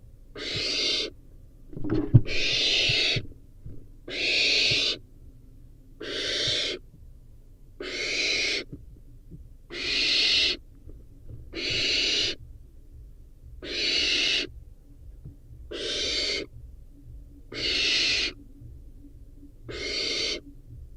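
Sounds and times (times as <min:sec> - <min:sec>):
owlet hissing begging call: 0:00.4 - 0:01.1, 0:02.3 - 0:03.2, 0:04.1 - 0:05.0, 0:06.0 - 0:06.8, 0:07.8 - 0:08.7, 0:09.7 - 0:10.6, 0:11.6 - 0:12.4, 0:13.6 - 0:14.5, 0:15.7 - 0:16.5, 0:17.5 - 0:18.4, 0:19.7 - 0:20.5.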